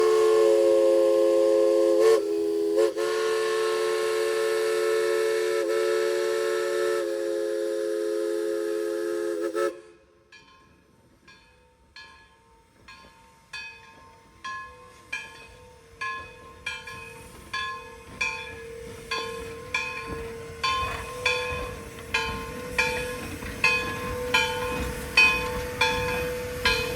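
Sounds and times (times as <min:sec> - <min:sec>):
steam hissing: 0:00.0 - 0:10.0, 0:12.6 - 0:26.9
steam whistle chord: 0:00.0 - 0:10.3
locomotive bell ringing: 0:10.3 - 0:26.9.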